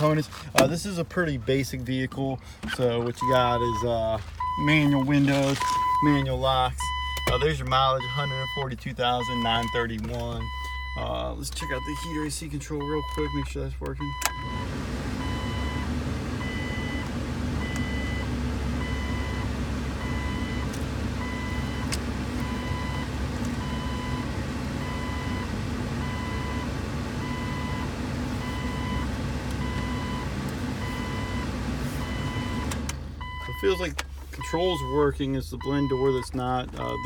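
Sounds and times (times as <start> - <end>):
dashboard warning chime beeping: 2.7 - 37.0
heater blower fan running: 14.4 - 33.4.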